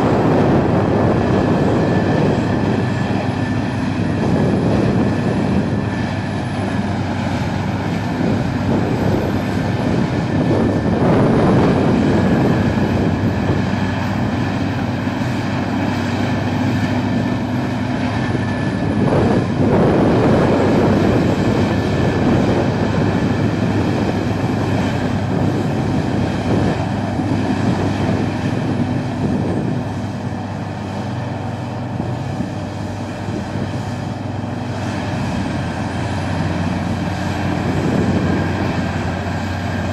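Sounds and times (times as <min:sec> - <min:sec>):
wood chipper running: 0:00.0 - 0:39.9.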